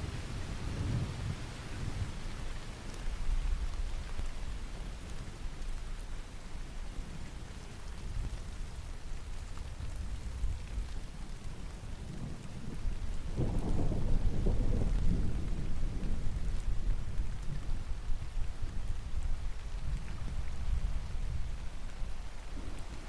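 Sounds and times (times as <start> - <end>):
steady rain falling: 0.0 - 23.0
thunder rumbling: 12.7 - 18.6.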